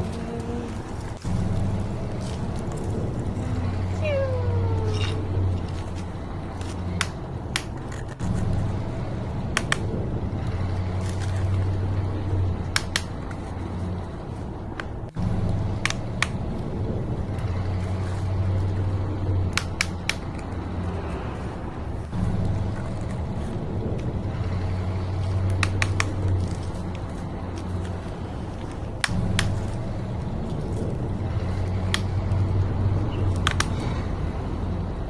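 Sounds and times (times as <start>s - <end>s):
toy truck motor humming: 0.0s - 1.2s.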